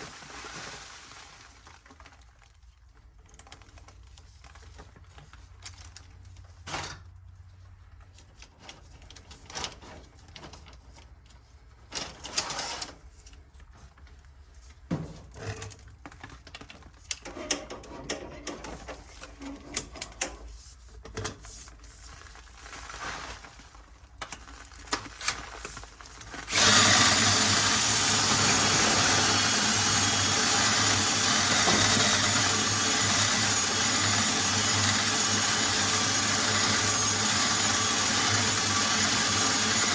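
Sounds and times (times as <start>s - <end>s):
electric motor running: 26.5s - 39.9s.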